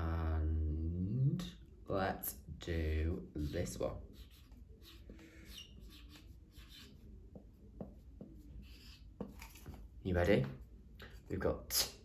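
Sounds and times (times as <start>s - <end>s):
pen scratching on paper: 3.3s - 9.7s.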